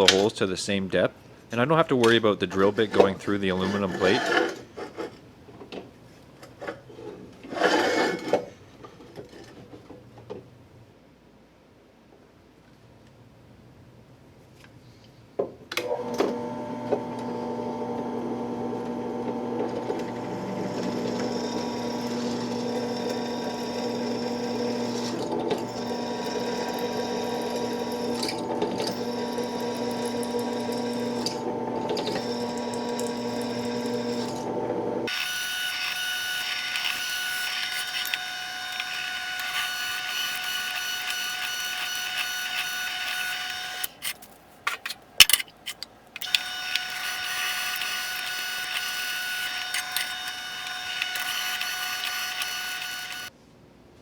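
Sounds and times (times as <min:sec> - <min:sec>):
drill press drilling metal: 0:15.8 - 0:53.3
high-pitched machine whine: 0:46.2 - 0:53.3.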